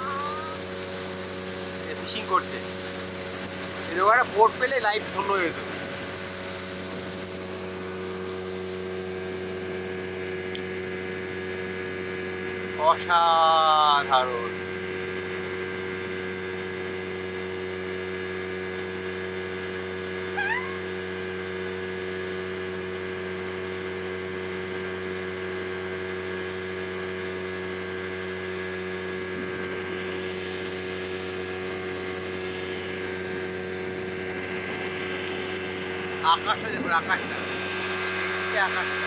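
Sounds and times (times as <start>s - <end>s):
speedboat engine drone: 0.0s - 39.0s
rising chirp: 20.3s - 21.0s.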